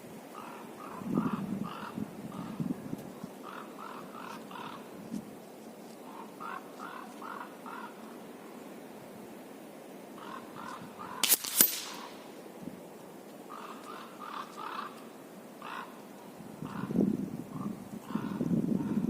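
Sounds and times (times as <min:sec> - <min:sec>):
crows cawing: 0:00.4 - 0:02.6, 0:03.4 - 0:05.0, 0:06.0 - 0:08.2, 0:10.2 - 0:11.2, 0:13.5 - 0:17.0, 0:17.6 - 0:19.0
air rifle shots: 0:11.2 - 0:12.4.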